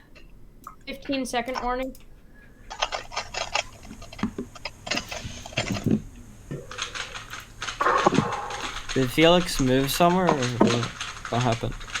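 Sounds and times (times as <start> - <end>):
puzzle cube plastic clicks: 6.7 - 12.0.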